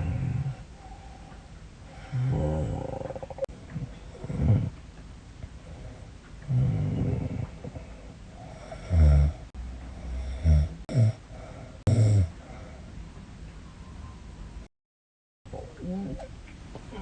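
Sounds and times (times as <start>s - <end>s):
woman snoring: 0.0s - 0.6s, 2.0s - 3.5s, 4.2s - 4.7s, 6.5s - 7.8s, 8.4s - 11.2s, 11.8s - 12.4s.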